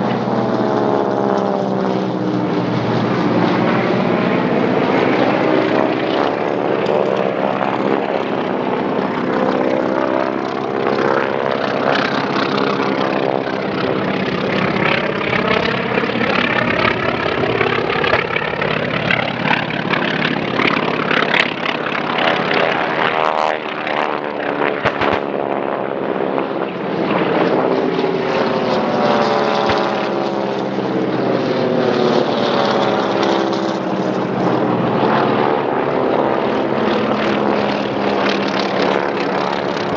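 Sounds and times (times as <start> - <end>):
propeller planes flying by: 0.0 - 39.9.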